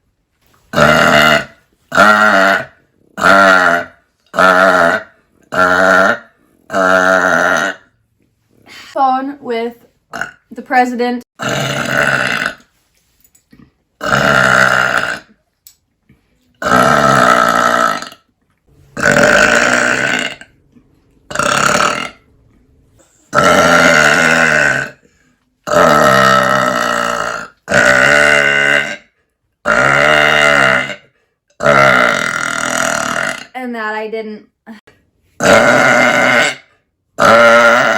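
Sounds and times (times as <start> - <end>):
woman belching loudly: 0.8 - 7.9, 11.4 - 12.6, 14.0 - 15.4, 16.6 - 18.3, 19.0 - 20.6, 21.3 - 22.2, 23.3 - 25.0, 25.7 - 29.0, 29.6 - 33.6, 35.4 - 36.6, 37.2 - 37.9.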